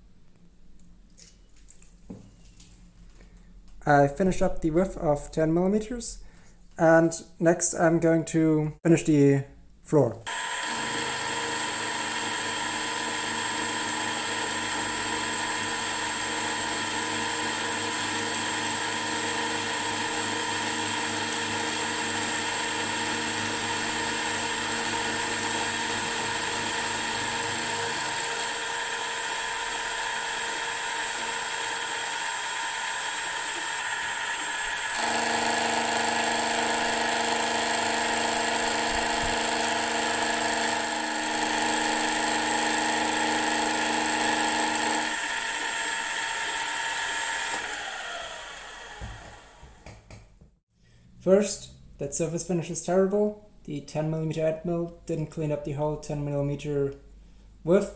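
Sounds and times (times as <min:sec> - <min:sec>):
milling machine whine: 0:10.3 - 0:49.9.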